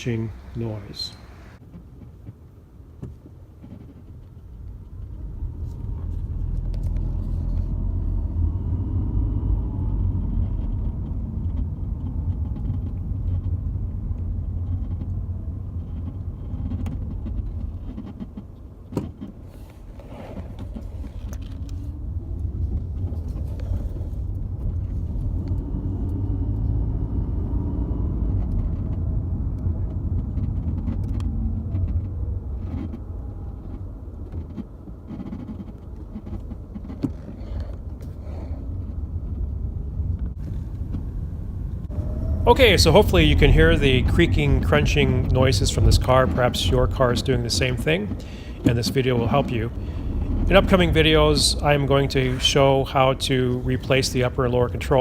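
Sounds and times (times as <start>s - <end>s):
car road rumble: 0.0s - 55.0s
suspension creaking and crunching: 0.0s - 55.0s.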